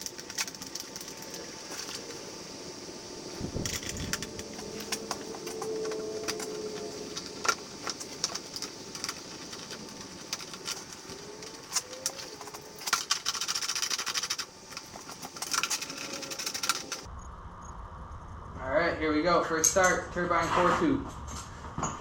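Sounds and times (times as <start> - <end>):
rapid clicking: 0.0 - 2.2, 3.4 - 17.1
tools and plastic parts clattering: 0.0 - 2.2, 3.3 - 17.1.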